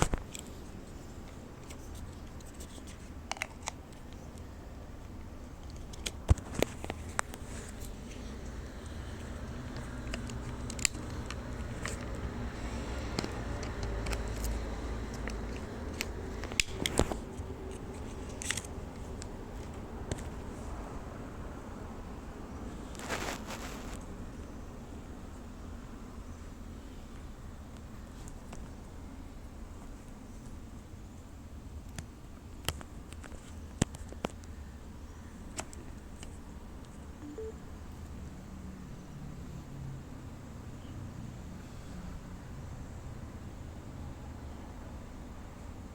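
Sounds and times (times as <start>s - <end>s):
packaging clicks and crackles: 8.8s - 20.4s.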